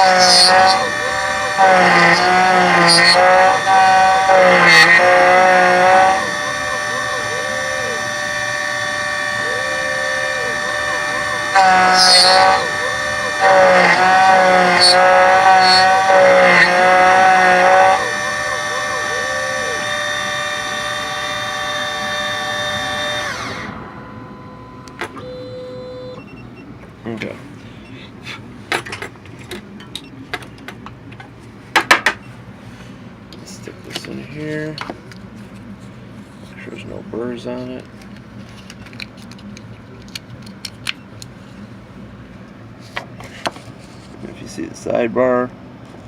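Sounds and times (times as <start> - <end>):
steady tone: 0.0 - 26.2
key cutter motor whining: 0.0 - 26.5.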